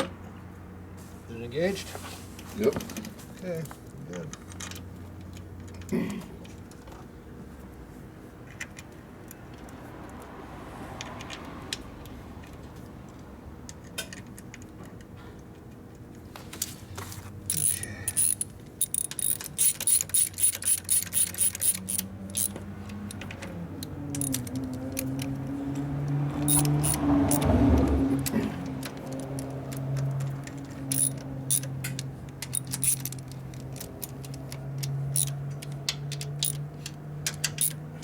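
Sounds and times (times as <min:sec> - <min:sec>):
sharp metallic clicking: 0:17.5 - 0:23.2, 0:23.8 - 0:27.9, 0:28.8 - 0:36.7, 0:37.3 - 0:37.8.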